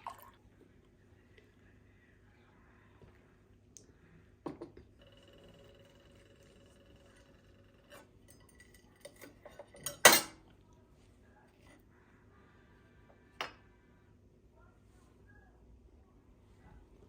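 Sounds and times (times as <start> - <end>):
kitchenware clattering: 7.9 - 10.4.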